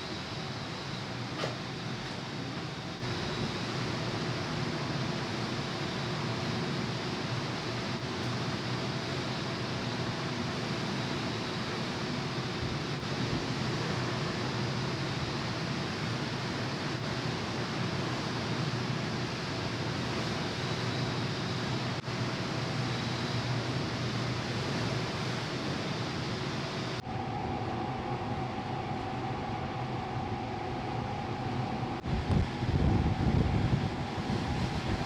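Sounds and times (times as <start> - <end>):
ship wash rushing: 11.8 - 35.0.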